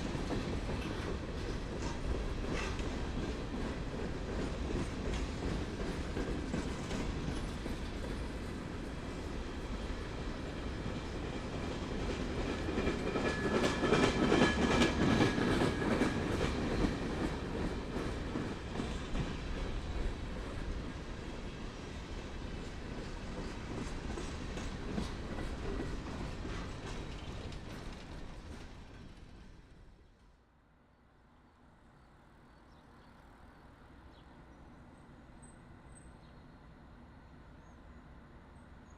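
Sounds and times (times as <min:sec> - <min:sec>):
train wheels clacking: 0:00.0 - 0:30.3
train rumble: 0:00.0 - 0:30.5.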